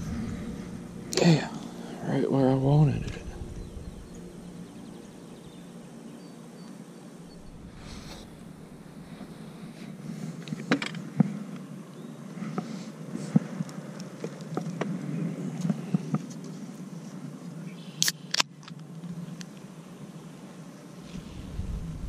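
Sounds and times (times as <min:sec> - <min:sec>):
soda can cracked open: 0:18.0 - 0:18.5.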